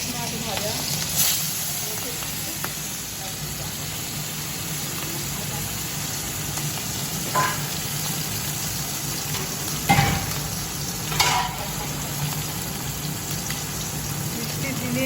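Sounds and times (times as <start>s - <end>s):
fish sizzling in hot oil: 0.0s - 15.0s
utensil clinking against pan: 11.1s - 11.8s.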